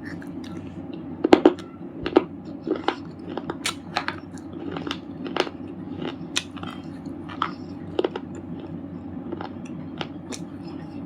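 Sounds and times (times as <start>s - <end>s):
steady low hum: 0.0s - 11.0s
stone chips crunching: 2.6s - 8.7s.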